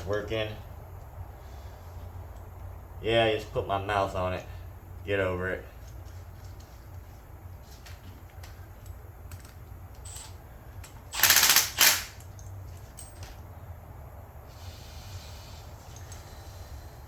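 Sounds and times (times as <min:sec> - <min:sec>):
small parts clicking: 0:08.3 - 0:13.4
air hissing bursts: 0:14.4 - 0:17.0.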